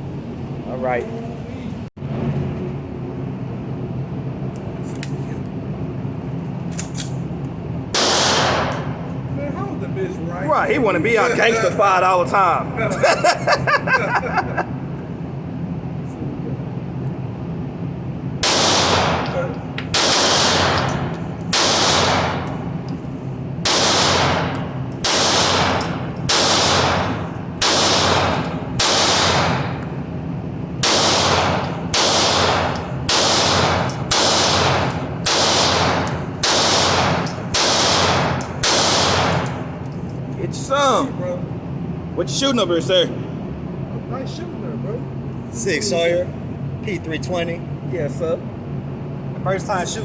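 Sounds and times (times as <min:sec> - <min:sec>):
steady low hum: 0:00.0 - 0:50.0
pistol shots: 0:08.0 - 0:08.9, 0:18.4 - 0:22.5, 0:23.6 - 0:29.8, 0:30.8 - 0:39.6.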